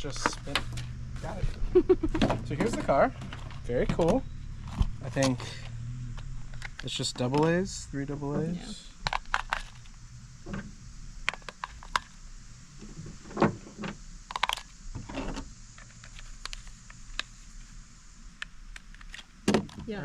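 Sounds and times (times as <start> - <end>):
batteries clicking into compartment: 15.8 - 17.3, 18.4 - 19.8.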